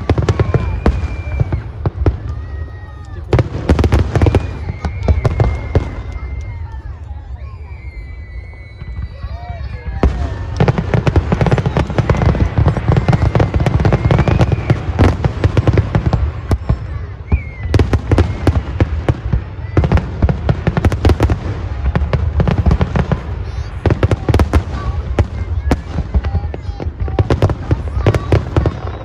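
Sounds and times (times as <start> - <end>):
deep rumbling fireworks booms: 0.0 - 29.0
fireworks cracks and pops: 0.0 - 29.0.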